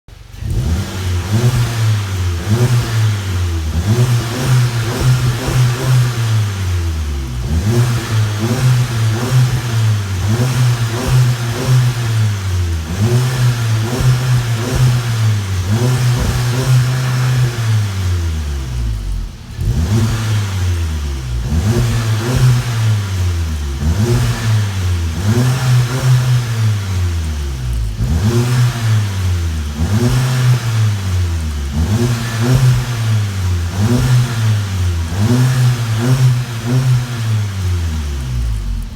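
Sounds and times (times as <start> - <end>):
car engine revving: 0.1 - 38.9.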